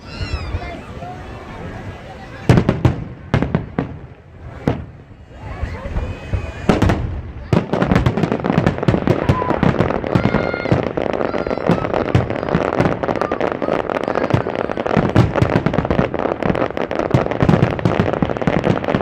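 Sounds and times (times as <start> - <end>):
fireworks booming bursts: 0.0 - 19.0
fireworks crackling: 0.0 - 19.0.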